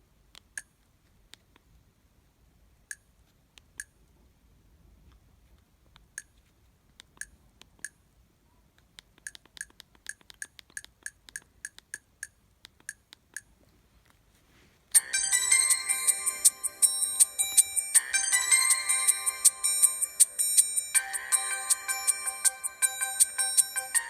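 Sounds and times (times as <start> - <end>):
polyphonic ringtone playing: 14.9 - 24.0.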